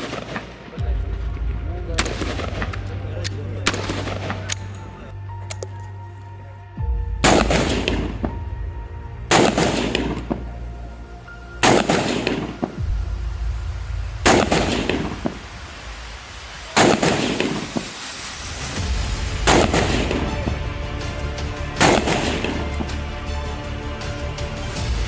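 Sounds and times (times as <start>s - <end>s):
rifle gunshots with echo: 0.0s - 5.1s.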